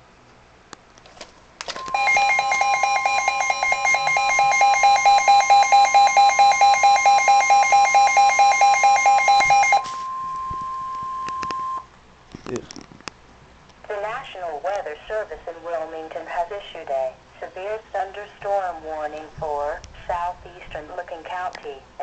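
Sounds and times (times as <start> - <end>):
steady high alert tone: 1.8 - 11.8
warbling alarm tone: 1.8 - 11.8.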